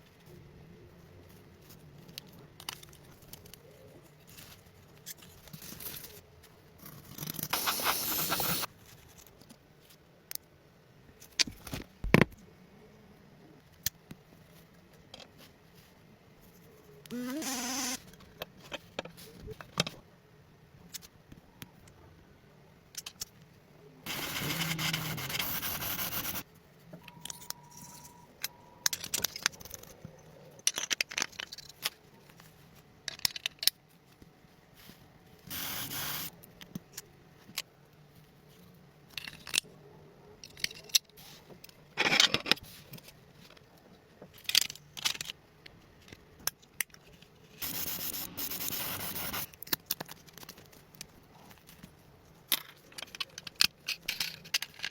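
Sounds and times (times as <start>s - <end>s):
small parts clicking and tapping: 1.3s - 10.5s, 22.9s - 23.5s, 24.1s - 34.3s, 40.4s - 54.9s
scraping or rubbing noise: 24.1s - 26.5s.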